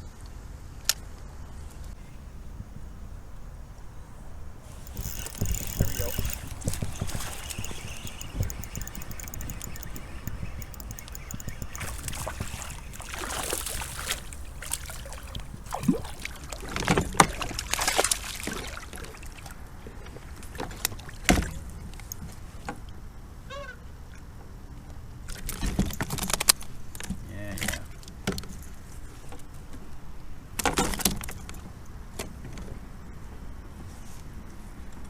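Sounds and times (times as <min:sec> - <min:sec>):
high chirps: 0:02.0 - 0:16.2
water splashing around kayak: 0:02.0 - 0:18.8.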